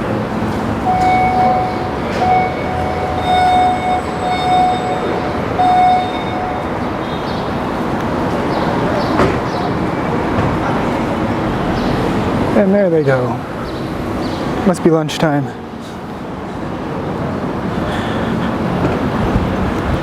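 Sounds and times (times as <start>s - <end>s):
train rumbling past: 0.0s - 20.0s
train bell ringing: 0.8s - 7.6s.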